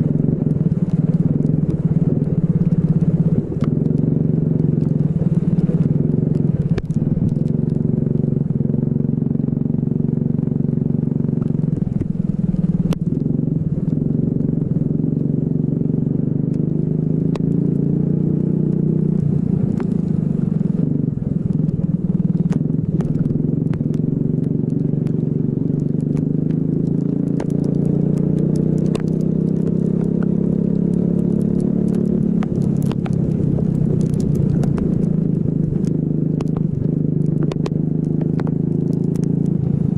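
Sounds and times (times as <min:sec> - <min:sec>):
sharp ticks: 0:21.4 - 0:30.3, 0:30.9 - 0:39.8.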